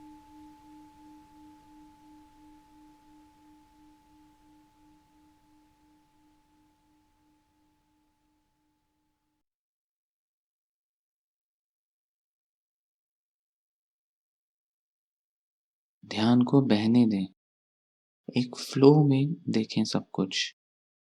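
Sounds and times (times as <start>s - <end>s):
singing bowl ringing: 0.0s - 8.7s.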